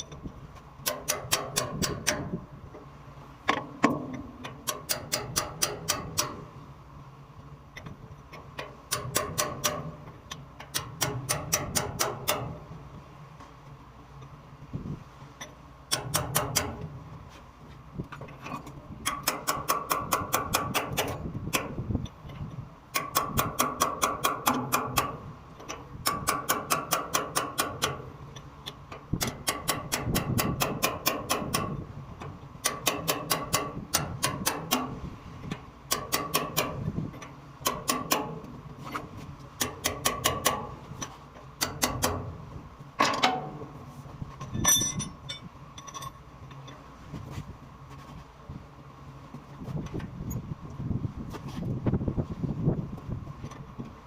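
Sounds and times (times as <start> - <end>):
low machinery hum: 0.0 - 54.0
metallic clicking of hand tool: 0.8 - 2.4, 3.5 - 6.4, 7.8 - 12.6, 15.4 - 16.9, 18.2 - 39.0.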